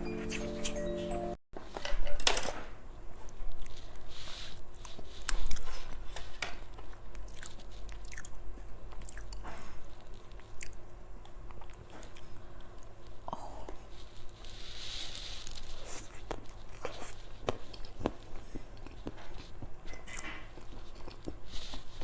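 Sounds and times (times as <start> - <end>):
person chewing food: 4.7 - 13.9, 15.7 - 22.0.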